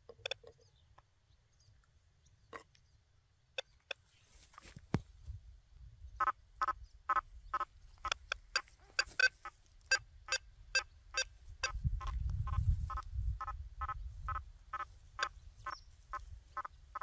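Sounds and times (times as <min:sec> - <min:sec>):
metal detector buzzy beeps: 0:08.5 - 0:11.3.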